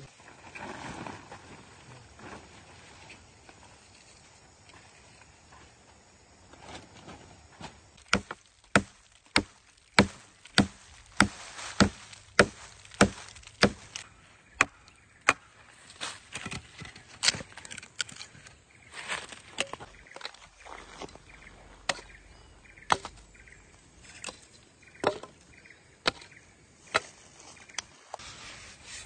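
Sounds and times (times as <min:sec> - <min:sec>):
tool striking wood: 0:08.0 - 0:13.8.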